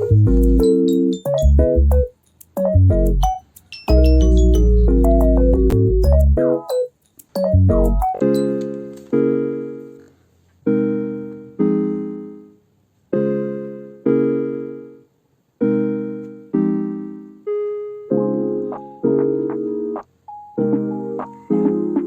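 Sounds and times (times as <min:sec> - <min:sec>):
slow piano chords: 0:13.2 - 0:22.0.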